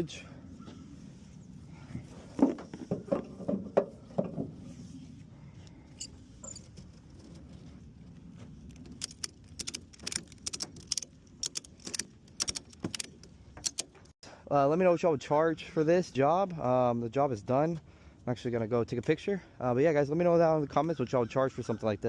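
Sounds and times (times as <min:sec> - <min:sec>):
sharp clicks and rattles: 0:08.6 - 0:14.1.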